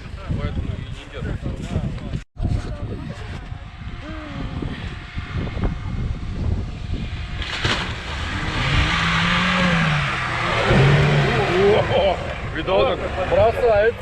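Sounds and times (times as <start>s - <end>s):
vehicle engine revving: 3.6s - 14.0s.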